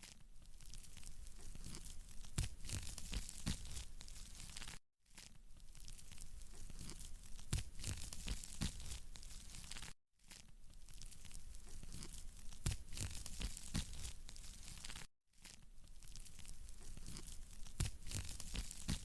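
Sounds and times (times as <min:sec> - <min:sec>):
wood fire crackling and popping: 0:00.6 - 0:04.8, 0:05.8 - 0:10.0, 0:10.9 - 0:15.1.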